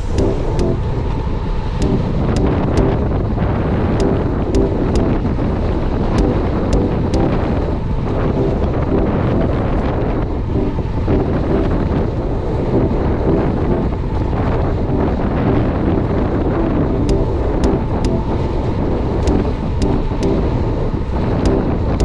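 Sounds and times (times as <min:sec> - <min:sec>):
wind buffeting microphone: 0:00.0 - 0:22.0
sharp clicks: 0:01.8 - 0:03.0, 0:04.0 - 0:05.2.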